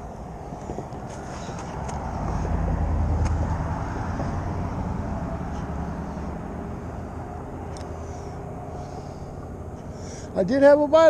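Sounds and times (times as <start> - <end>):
vehicle passing by rumble: 0.0 - 10.4.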